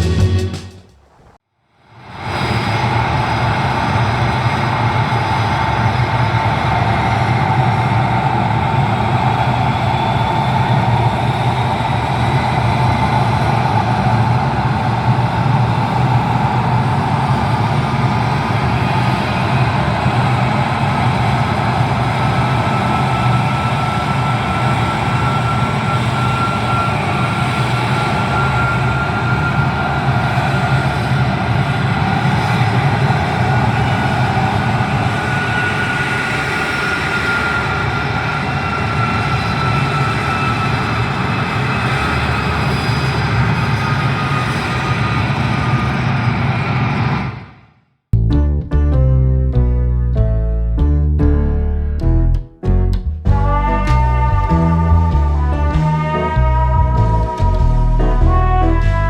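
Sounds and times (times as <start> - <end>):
faint high whine: 2.0 - 45.0.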